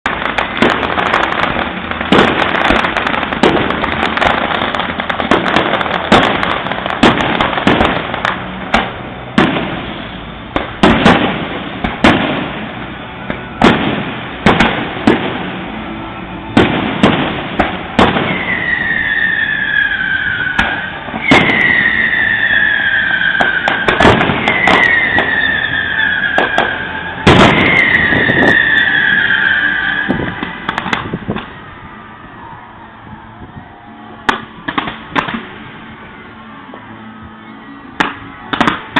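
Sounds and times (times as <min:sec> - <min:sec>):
fireworks bangs: 0:00.0 - 0:37.3, 0:38.0 - 0:38.9
fireworks crackling: 0:00.0 - 0:38.9
falling firework whistle: 0:09.4 - 0:35.4.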